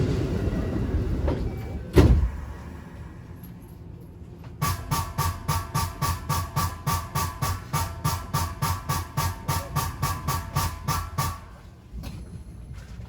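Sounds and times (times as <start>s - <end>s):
rapid bursts of air: 4.6s - 11.4s.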